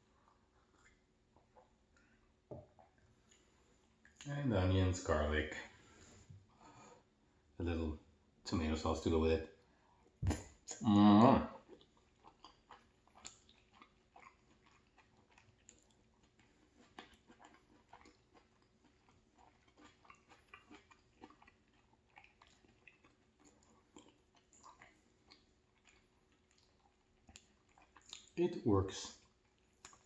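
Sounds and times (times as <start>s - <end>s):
person chewing food: 0.0s - 4.3s, 11.6s - 28.4s, 29.1s - 30.0s.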